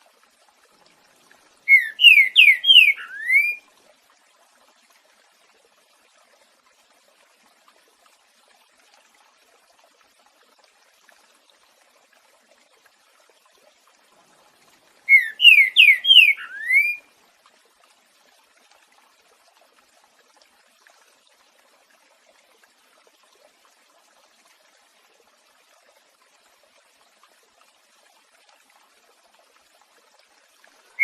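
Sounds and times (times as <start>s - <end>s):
water trickling: 0.0s - 31.0s
bird whistling song: 1.7s - 3.6s, 15.1s - 17.0s.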